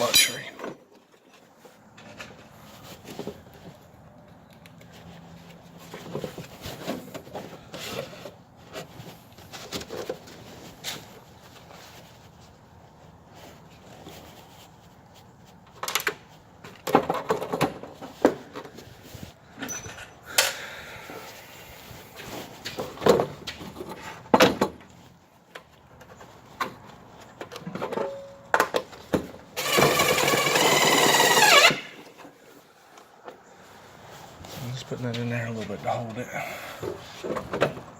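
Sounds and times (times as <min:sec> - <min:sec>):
power drill driving a screw: 0:29.6 - 0:32.0.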